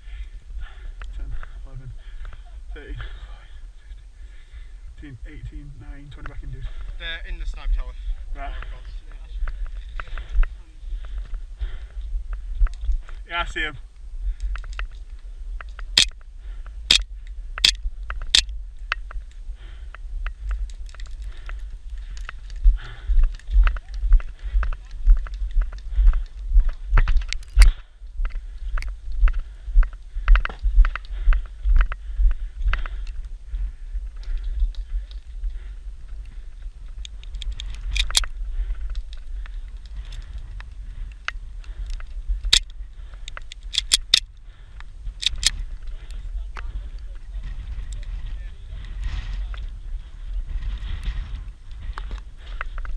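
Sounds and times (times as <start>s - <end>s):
faint clicks: 13.9s - 52.9s
gear rustling: 36.1s - 44.3s.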